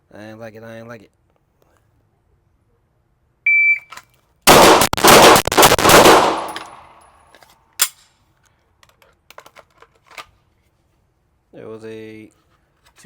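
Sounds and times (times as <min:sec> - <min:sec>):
shot timer beep: 0:03.5 - 0:03.9
gunshot echo: 0:04.5 - 0:07.0
pistol shots: 0:04.5 - 0:07.0.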